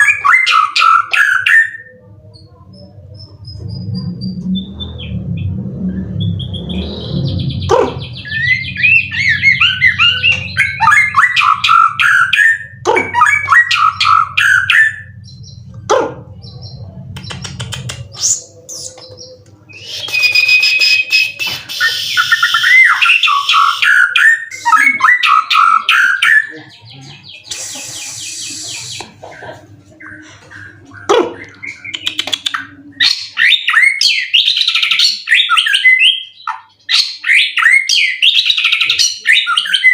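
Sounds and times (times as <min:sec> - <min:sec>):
bird singing: 0:00.0 - 0:39.9
low hum: 0:02.0 - 0:10.8.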